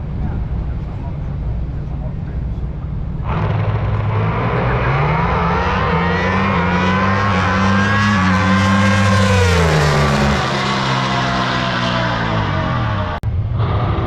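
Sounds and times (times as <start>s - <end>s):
drag race car engine accelerating: 3.2s - 14.0s.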